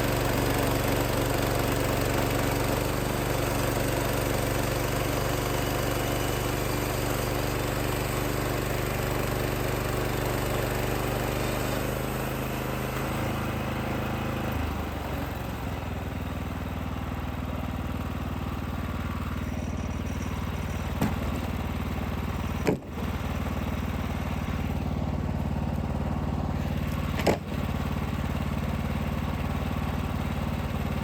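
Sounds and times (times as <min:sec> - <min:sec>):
sawmill engine running: 0:00.0 - 0:31.0
sharp knocks: 0:21.0 - 0:21.4.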